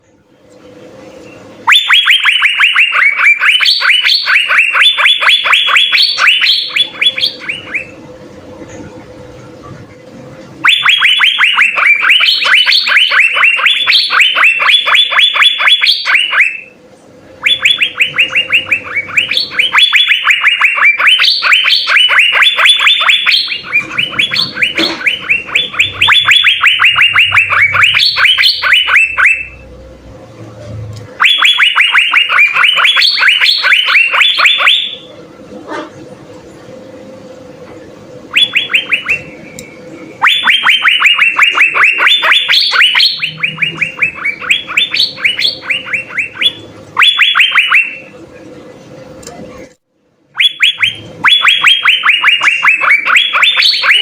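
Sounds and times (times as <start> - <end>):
bird singing sharp repeated notes: 1.2 - 8.0, 10.6 - 16.7, 17.4 - 29.6, 31.2 - 35.1, 38.3 - 48.1, 50.4 - 54.0.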